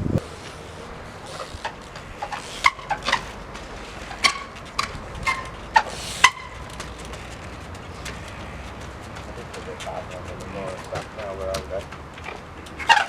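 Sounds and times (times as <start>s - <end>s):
bike landing knocks: 0.0s - 8.8s
steady hiss: 5.6s - 7.1s.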